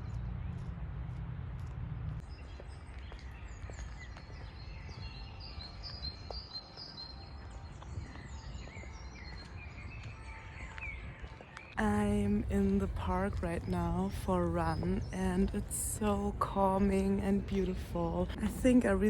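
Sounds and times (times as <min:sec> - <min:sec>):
low background rumble: 0:00.0 - 0:02.4, 0:11.8 - 0:19.0
birds chirping and singing: 0:02.2 - 0:18.4.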